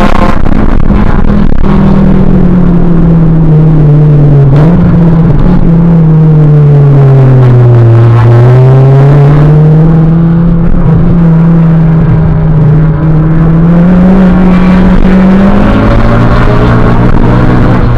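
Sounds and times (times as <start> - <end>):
car engine revving under load: 0.0 - 17.9.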